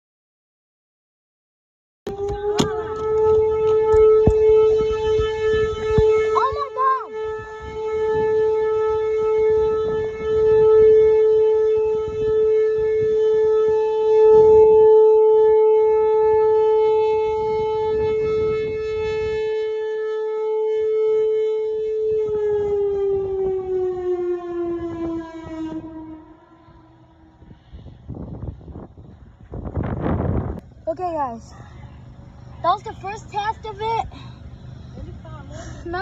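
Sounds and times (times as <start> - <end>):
outdoor warning siren: 2.1 - 30.7.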